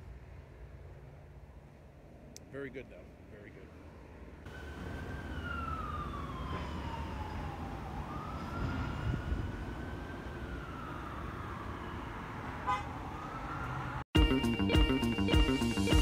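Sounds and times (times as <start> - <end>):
low road rumble: 0.0 - 16.0
emergency siren wailing: 4.5 - 16.0.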